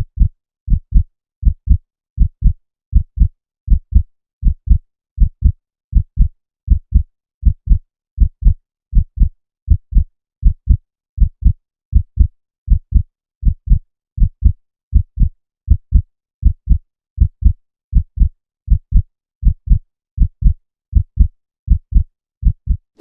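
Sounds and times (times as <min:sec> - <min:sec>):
heartbeat double beats: 0:00.0 - 0:22.8.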